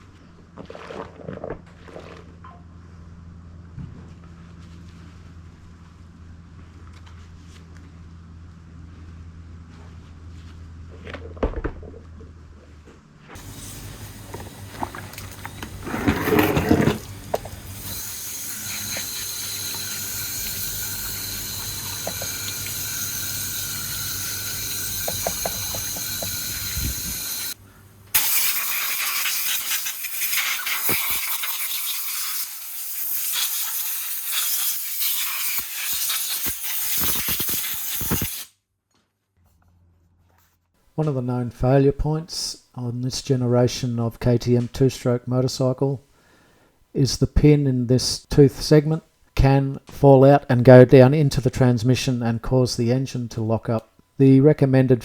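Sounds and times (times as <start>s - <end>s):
water running and splashing: 13.4s - 17.8s.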